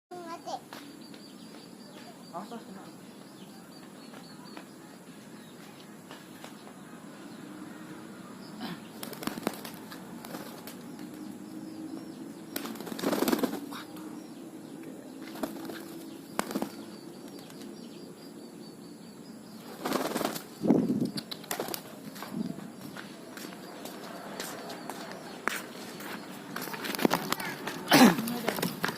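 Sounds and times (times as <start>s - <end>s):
pigeon wings flapping: 9.0s - 10.8s, 12.6s - 13.7s, 15.3s - 16.8s, 19.7s - 20.5s, 21.2s - 21.9s, 26.6s - 28.9s
sharp clicks: 21.0s - 21.6s.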